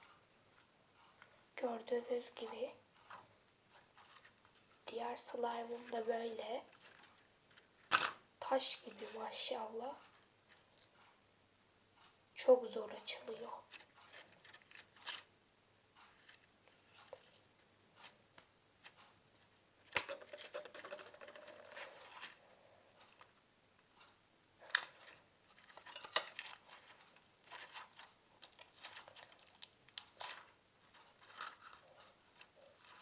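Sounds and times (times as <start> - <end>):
slime crackling and tearing: 26.4 - 33.0.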